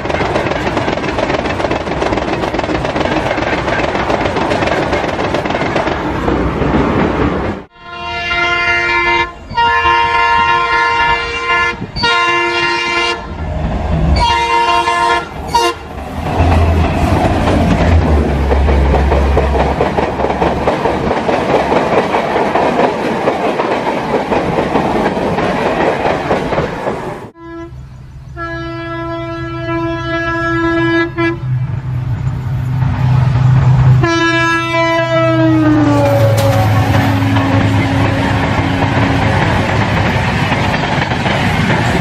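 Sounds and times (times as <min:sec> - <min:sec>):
train passing at speed: 0:00.0 - 0:42.0
locomotive horn blasts: 0:07.7 - 0:13.4, 0:14.2 - 0:15.9, 0:27.4 - 0:31.6, 0:34.0 - 0:39.5.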